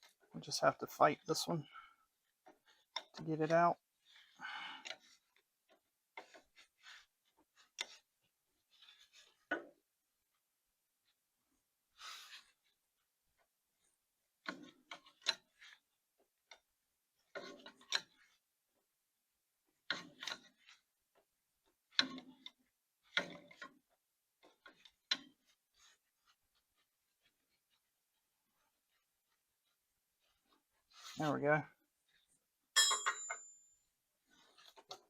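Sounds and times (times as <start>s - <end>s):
wrench clinking and scraping: 32.8s - 33.7s.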